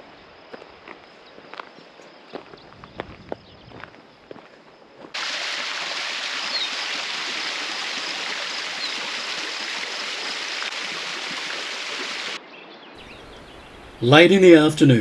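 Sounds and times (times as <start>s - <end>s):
stream running water: 5.2s - 12.4s, 13.0s - 15.0s.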